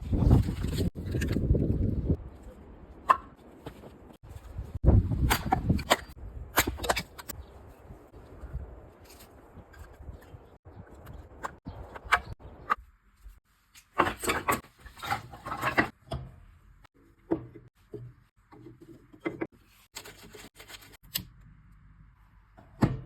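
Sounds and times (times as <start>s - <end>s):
wooden knocks and scrapes: 13.9s - 16.4s, 17.2s - 21.0s
rubbing and rustling: 18.2s - 21.0s.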